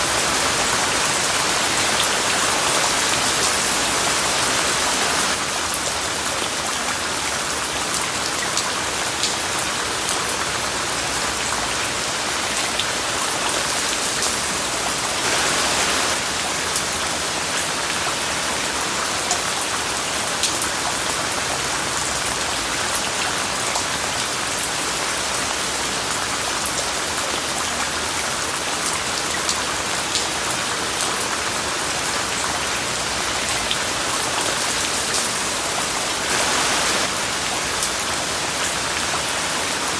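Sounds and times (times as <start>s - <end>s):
steady rain hiss: 0.0s - 6.4s, 10.8s - 20.6s, 30.0s - 39.9s.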